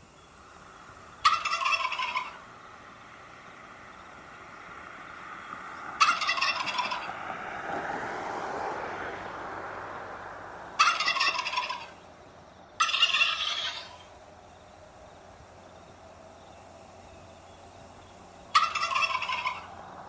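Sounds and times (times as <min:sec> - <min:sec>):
turkey gobbling: 0:01.2 - 0:02.4, 0:06.0 - 0:07.2, 0:10.8 - 0:12.0, 0:12.8 - 0:14.2, 0:18.5 - 0:19.8.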